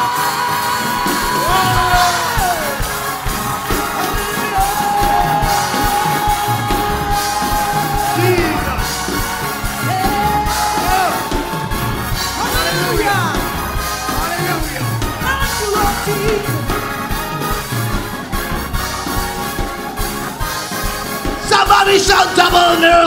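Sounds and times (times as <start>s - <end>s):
person singing: 0.0s - 11.6s
music with steady beat: 0.0s - 23.0s.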